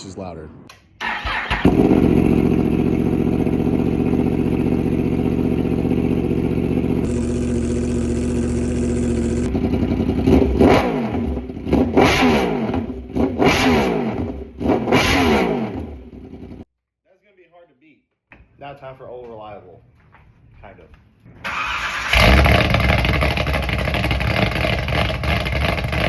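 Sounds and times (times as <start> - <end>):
motorcycle engine revving: 1.0 - 16.6, 21.5 - 26.0
motorcycle engine idling: 1.6 - 11.8.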